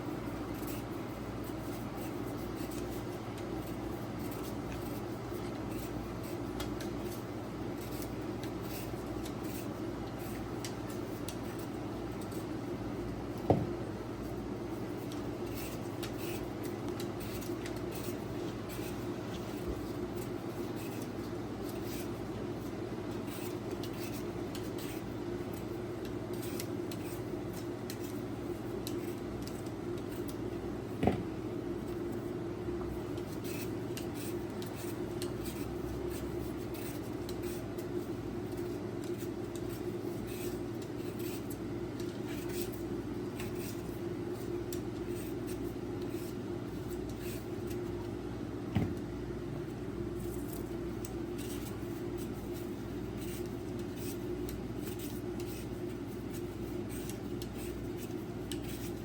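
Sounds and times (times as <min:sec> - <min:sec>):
steady hum: 0:00.0 - 0:59.0
utensils clicking and scraping: 0:14.9 - 0:30.4, 0:33.1 - 0:48.0, 0:50.2 - 0:59.0.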